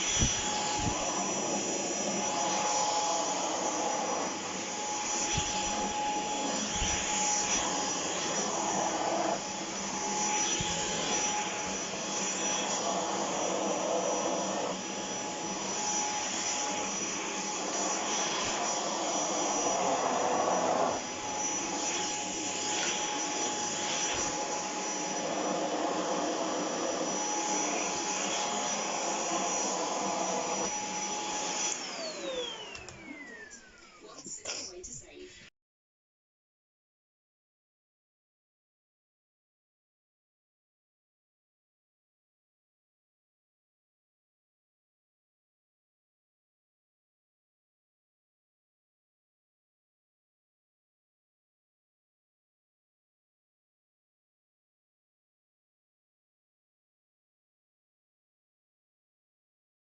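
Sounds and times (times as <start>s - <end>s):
stick vacuum cleaner running: 0.0s - 35.2s.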